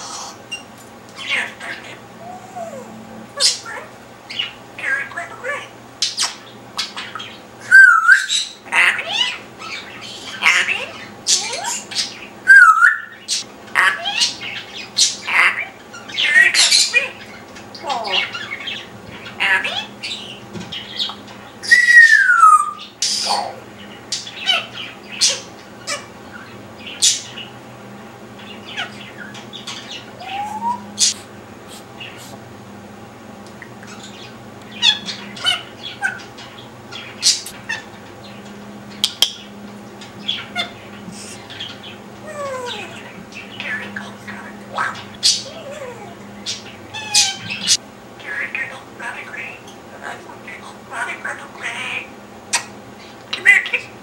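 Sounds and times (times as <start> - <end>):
parrot whistling: 1.6 - 3.6, 7.6 - 8.6, 11.3 - 13.2, 21.6 - 23.5, 29.9 - 31.2, 44.8 - 47.8.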